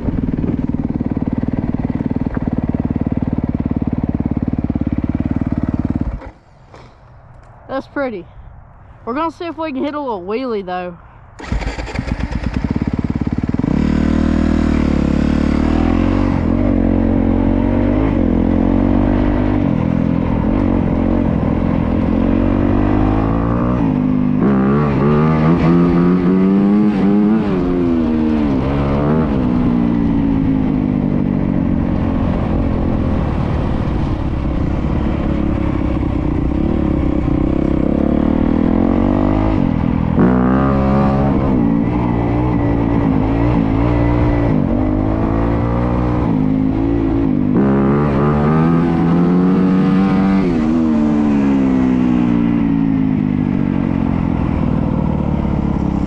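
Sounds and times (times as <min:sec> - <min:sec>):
dirt bike engine revving: 0:11.4 - 0:30.9, 0:35.3 - 0:52.4.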